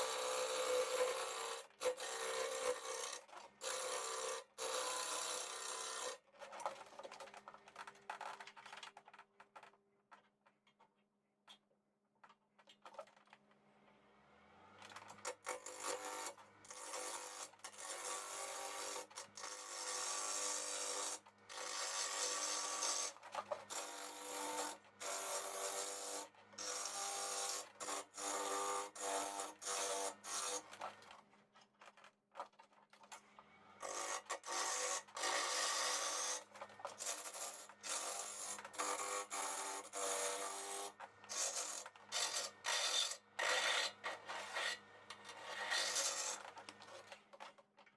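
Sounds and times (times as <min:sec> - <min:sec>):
turning tool scraping wood: 0:42.9 - 0:46.6.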